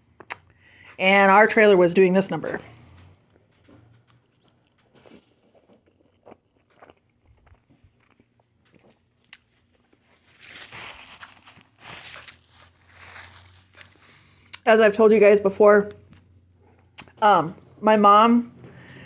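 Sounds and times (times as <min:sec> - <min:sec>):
small mouth clicks: 0:00.2 - 0:00.5
person chewing crunchy food: 0:02.8 - 0:14.6.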